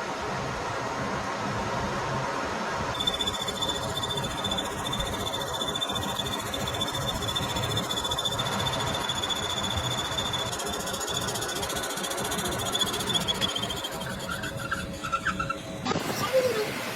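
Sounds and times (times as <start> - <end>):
machine noise: 2.9 - 16.9
metal lathe high whine: 3.0 - 16.0.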